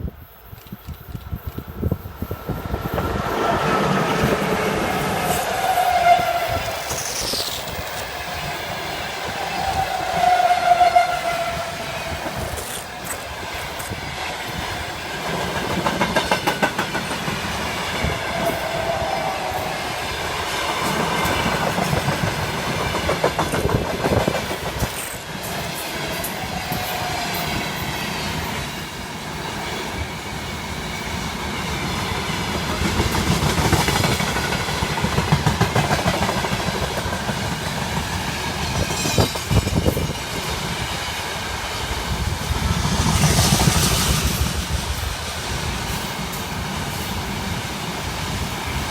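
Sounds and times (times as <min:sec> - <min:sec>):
freight train rumbling past: 0:00.0 - 0:48.9
wheels clacking over rail joints: 0:12.2 - 0:18.8, 0:31.6 - 0:41.0.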